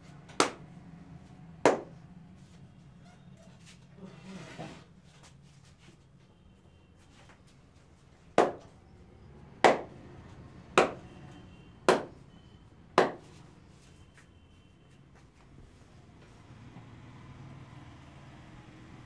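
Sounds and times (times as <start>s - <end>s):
clapping strikes of head massage: 0.4s - 0.7s, 1.7s - 1.9s, 9.6s - 9.9s, 10.8s - 11.0s, 11.9s - 12.1s, 13.0s - 13.4s.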